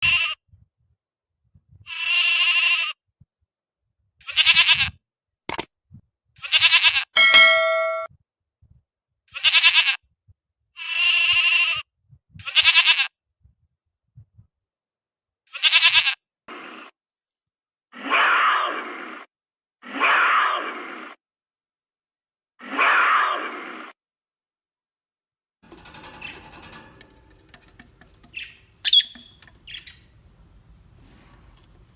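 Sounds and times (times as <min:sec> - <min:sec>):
farm animal bleating: 0:01.9 - 0:03.0, 0:10.8 - 0:11.8
bell-like ding: 0:07.2 - 0:08.1.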